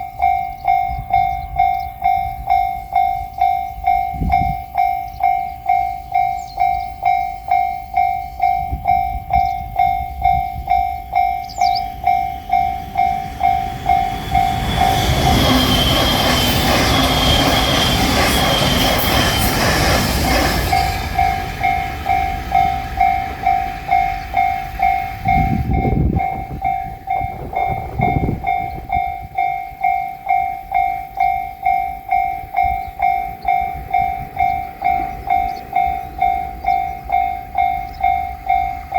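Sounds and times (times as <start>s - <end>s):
electric train rushing past: 0.0s - 38.9s
level crossing bell ringing: 20.7s - 38.9s.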